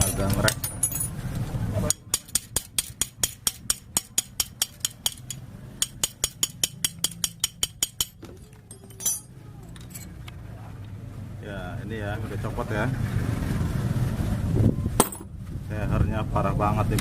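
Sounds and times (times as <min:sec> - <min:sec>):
sharp metallic taps: 0:01.9 - 0:09.2.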